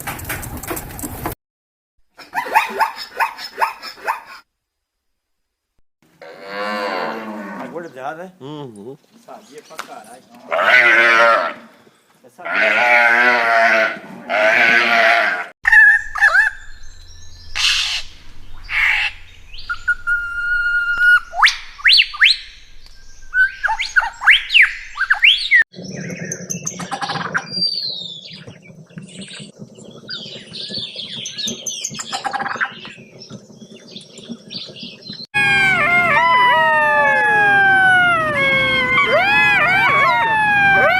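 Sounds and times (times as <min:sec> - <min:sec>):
birds chirping and whistling: 0:15.7 - 0:40.9.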